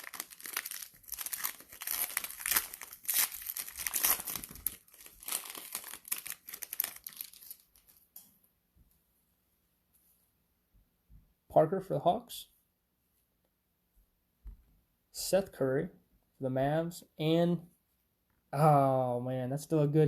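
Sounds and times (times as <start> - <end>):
cellophane wrapper tearing and crinkling: 0.0 - 8.0.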